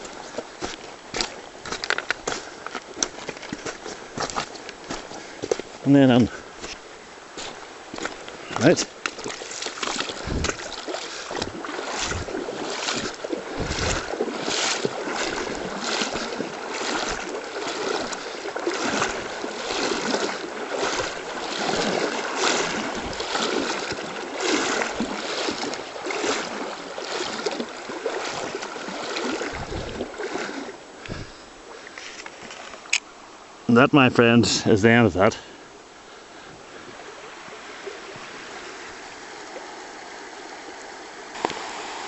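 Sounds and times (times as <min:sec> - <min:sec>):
footsteps splashing in water: 0:00.0 - 0:31.2
river rushing: 0:00.0 - 0:33.7, 0:35.6 - 0:42.0.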